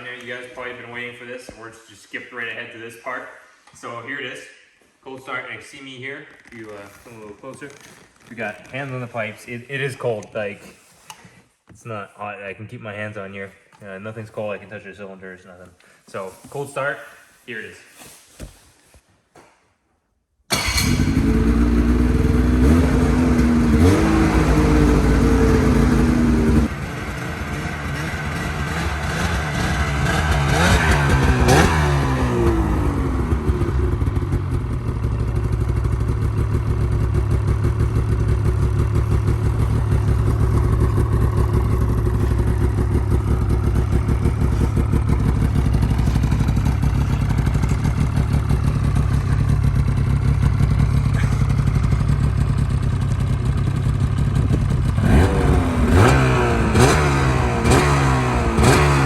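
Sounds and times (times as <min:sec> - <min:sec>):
two-stroke engine revving and idling: 0:20.5 - 0:59.0.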